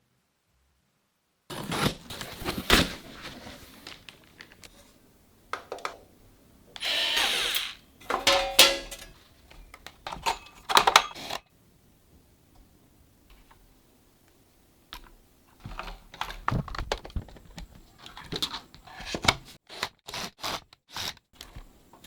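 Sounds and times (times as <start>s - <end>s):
computer parts clicking and knocking: 6.8s - 11.4s, 15.0s - 18.5s.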